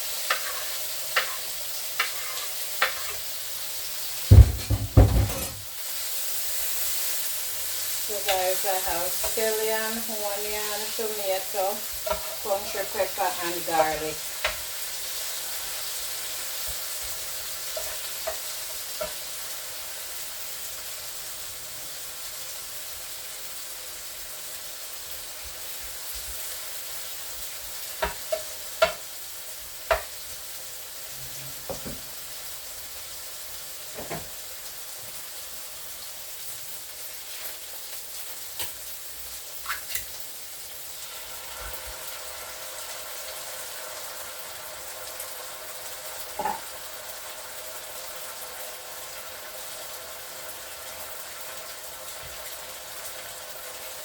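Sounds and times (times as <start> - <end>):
food sizzling in a frying pan: 0.0 - 54.0
utensil knocking against pan: 4.3 - 5.6.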